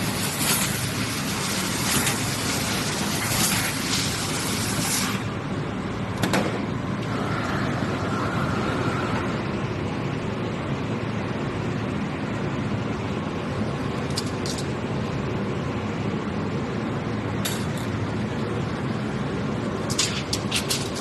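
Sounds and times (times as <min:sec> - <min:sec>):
hiss of air: 0:00.0 - 0:05.4
laser cutting machine running: 0:00.0 - 0:14.1.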